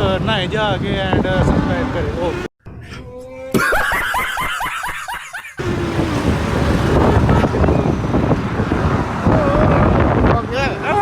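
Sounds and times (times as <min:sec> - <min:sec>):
wind buffeting microphone: 0:00.0 - 0:02.5, 0:05.6 - 0:11.0
low vehicle rumble: 0:05.6 - 0:11.0.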